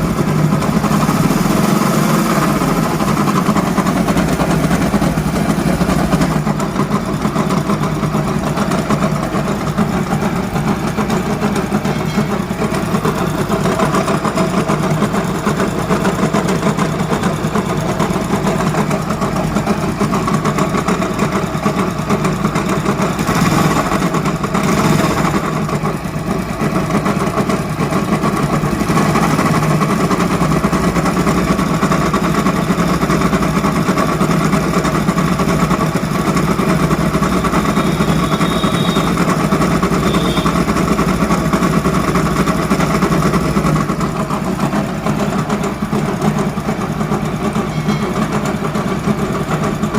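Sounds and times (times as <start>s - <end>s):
motorcycle engine running: 0.0s - 49.9s.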